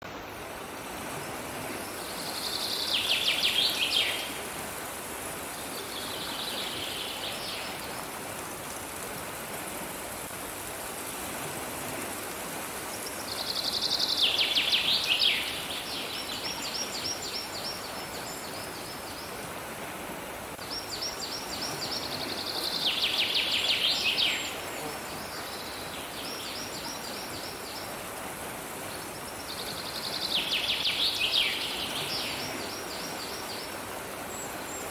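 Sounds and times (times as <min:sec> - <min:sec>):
songbird singing: 0:01.8 - 0:04.4, 0:05.5 - 0:08.0, 0:13.0 - 0:19.4, 0:20.6 - 0:28.0, 0:28.9 - 0:34.9.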